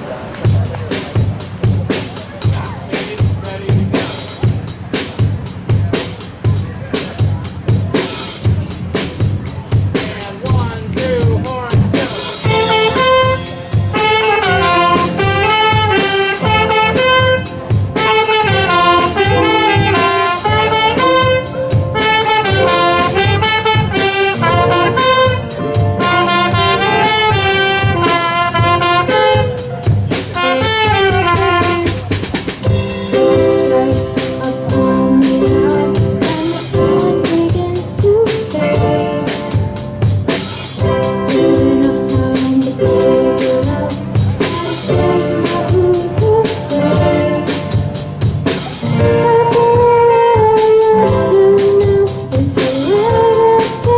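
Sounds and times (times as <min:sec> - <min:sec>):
bass: 0:00.0 - 0:53.9
drum kit: 0:00.0 - 0:53.9
held keyboard chords: 0:00.0 - 0:53.9
horn-like melody: 0:11.1 - 0:37.8, 0:38.4 - 0:53.9.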